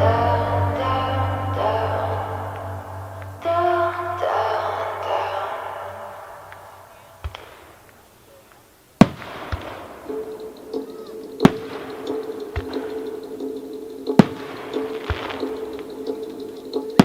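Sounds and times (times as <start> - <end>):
firework shells bursting: 6.4 - 17.0.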